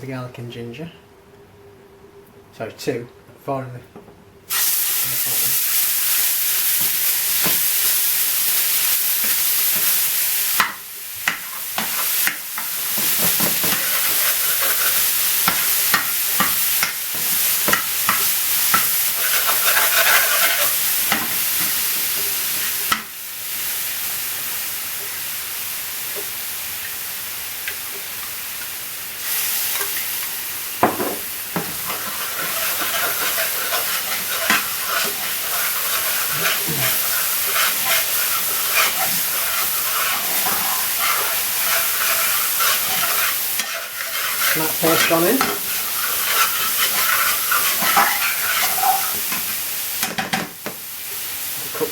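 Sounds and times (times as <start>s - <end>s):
paste sizzling in hot oil: 4.5s - 51.9s
stirring clicks and scrapes on pan: 10.6s - 17.0s, 17.6s - 21.3s, 31.6s - 49.6s.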